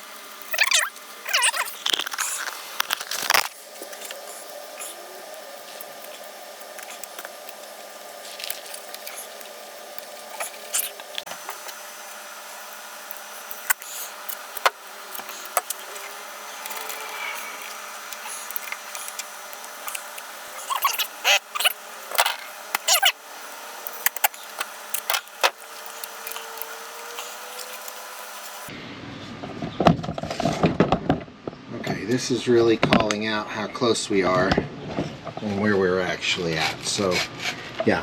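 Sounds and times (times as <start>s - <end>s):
adhesive tape ripping off roll: 0.4s - 11.8s, 23.8s - 28.7s.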